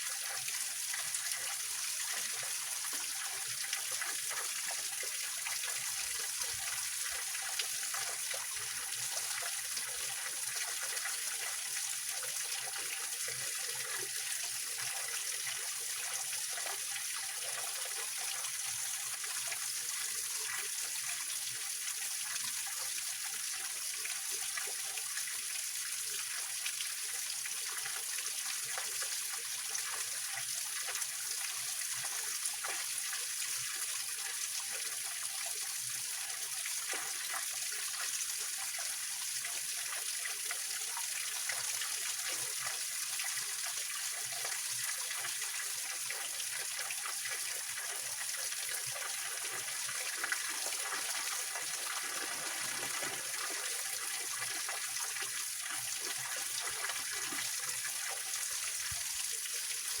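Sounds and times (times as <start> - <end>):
water trickling: 44.5 - 60.0
small waterfall rushing: 46.8 - 60.0.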